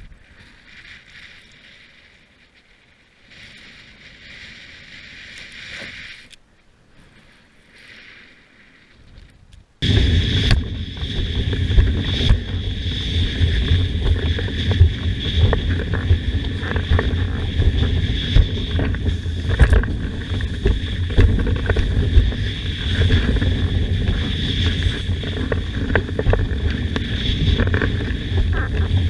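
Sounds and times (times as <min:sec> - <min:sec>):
wind buffeting microphone: 0:09.4 - 0:29.0
board slapping on waves: 0:09.8 - 0:29.0
water rushing past board: 0:09.8 - 0:29.0.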